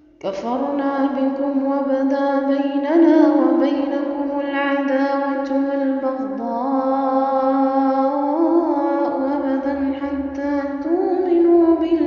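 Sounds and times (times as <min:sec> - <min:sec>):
woman chanting melodically: 0:00.2 - 0:12.0.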